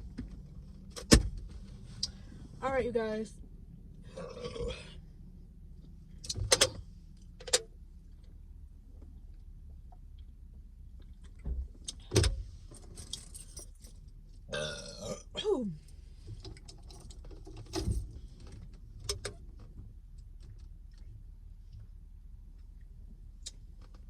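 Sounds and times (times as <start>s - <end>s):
person burping: 4.1s - 4.9s, 14.5s - 15.4s.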